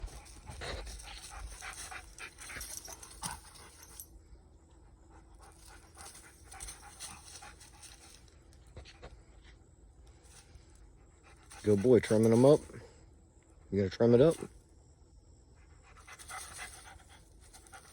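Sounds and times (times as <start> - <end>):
dog panting: 0.0 - 4.0, 4.8 - 8.2, 11.0 - 12.7, 15.6 - 17.9.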